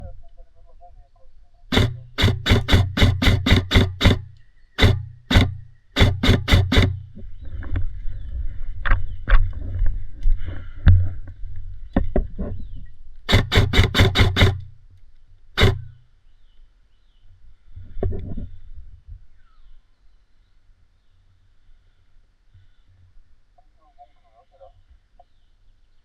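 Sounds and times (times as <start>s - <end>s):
airsoft gun shots: 1.7s - 7.1s, 13.3s - 14.8s, 15.6s - 16.0s
gun mechanism hum: 1.7s - 7.4s, 13.3s - 15.0s, 15.6s - 16.0s.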